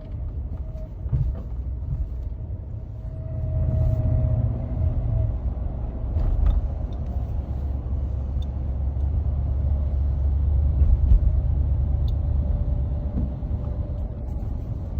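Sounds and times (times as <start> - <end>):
truck engine rumbling: 0.0 - 14.9.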